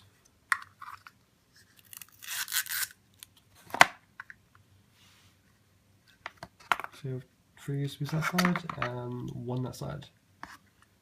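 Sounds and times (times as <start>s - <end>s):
packaging rustling and tearing: 1.7s - 3.0s.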